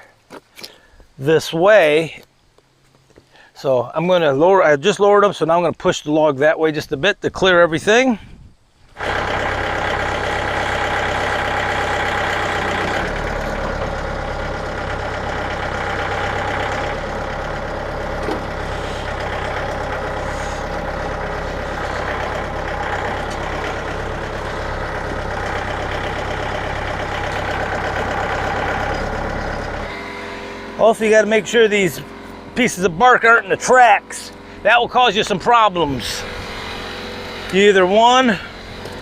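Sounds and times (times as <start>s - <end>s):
engine idling: 8.9s - 39.0s.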